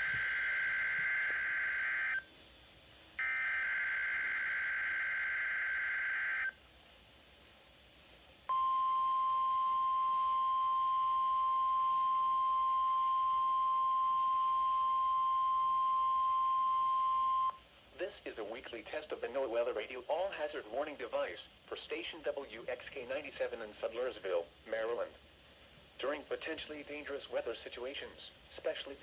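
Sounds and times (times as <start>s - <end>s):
steady warning alarm tone: 0.0s - 2.3s, 3.2s - 6.6s, 8.5s - 17.6s.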